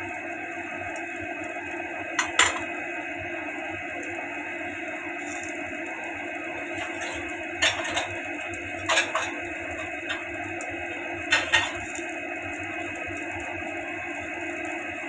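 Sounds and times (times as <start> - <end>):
steady background hum: 0.0 - 15.0
utensils clinking against a pot: 2.2 - 2.7, 6.6 - 10.3, 11.2 - 12.0.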